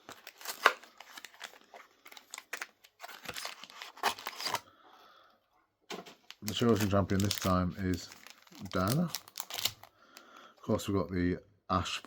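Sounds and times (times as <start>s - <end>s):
packaging clicks and rustles: 0.0s - 4.7s, 6.0s - 9.9s.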